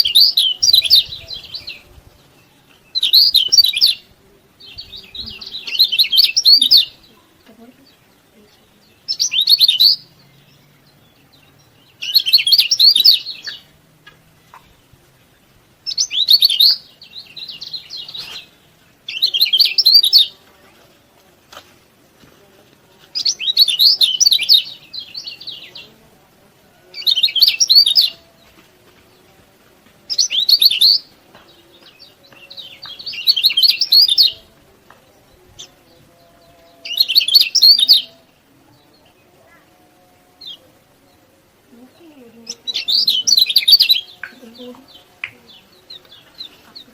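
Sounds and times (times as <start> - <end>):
bird rapid high chirping: 0.0 - 1.9, 2.9 - 4.0, 4.8 - 7.2, 9.0 - 10.2, 11.9 - 13.7, 15.9 - 20.4, 23.2 - 25.7, 30.1 - 31.1, 32.5 - 34.5, 36.8 - 38.2, 42.4 - 46.9.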